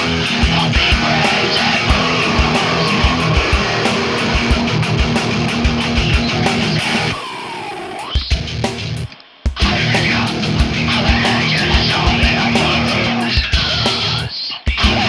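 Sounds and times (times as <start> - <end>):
bass guitar: 0.0 - 7.2, 8.2 - 15.0
steady drum beat: 0.0 - 7.2, 8.2 - 15.0
electric guitar: 0.0 - 15.0.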